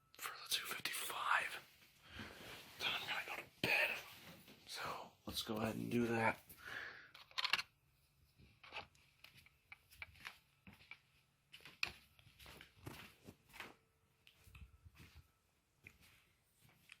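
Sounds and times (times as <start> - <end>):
small plastic parts clicking and rustling: 7.1 - 7.8.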